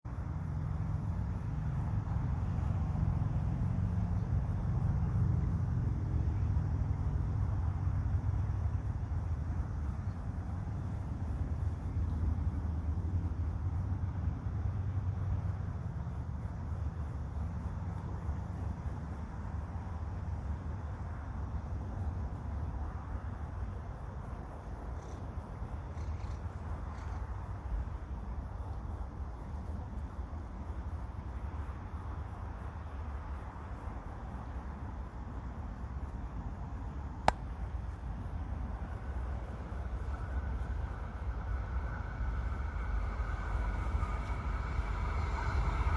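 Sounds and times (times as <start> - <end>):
insects chirping: 0.1 - 45.9
wind buffeting microphone: 38.7 - 45.9.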